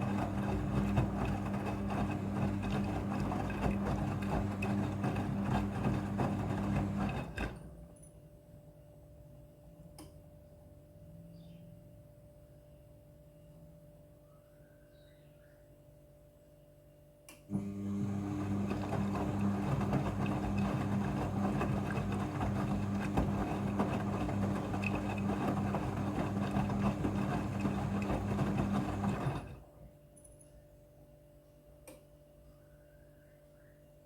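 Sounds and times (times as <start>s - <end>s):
washing machine humming: 0.0s - 7.8s, 17.5s - 29.8s.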